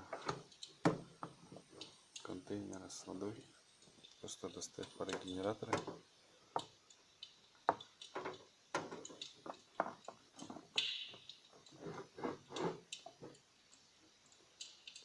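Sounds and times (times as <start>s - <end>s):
sharp clicks and knocks: 5.0s - 6.0s, 6.6s - 15.0s.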